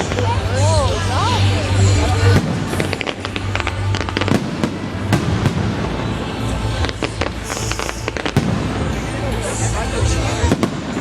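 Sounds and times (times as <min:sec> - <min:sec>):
fireworks crackling: 0:00.0 - 0:11.0
high crackling hiss: 0:01.6 - 0:09.6
fireworks bangs: 0:02.0 - 0:11.0.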